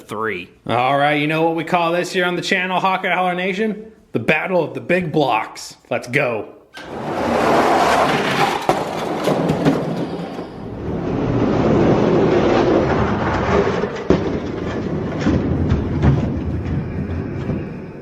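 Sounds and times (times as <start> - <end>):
toy trucks rolling on track: 6.8 - 17.7.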